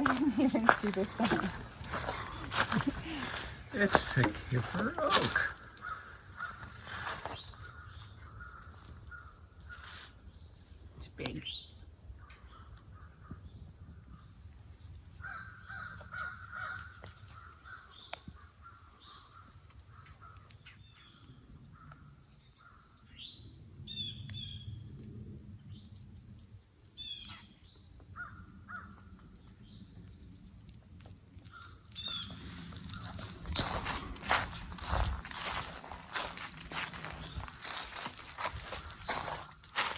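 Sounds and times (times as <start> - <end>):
bird calling: 0.0 - 10.0
high-pitched insect chorus: 0.0 - 39.9.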